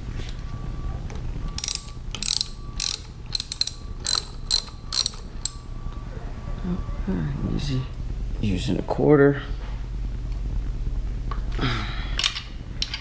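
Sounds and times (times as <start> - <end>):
low steady hum: 0.0 - 13.0
hand tool ratcheting: 1.6 - 5.6.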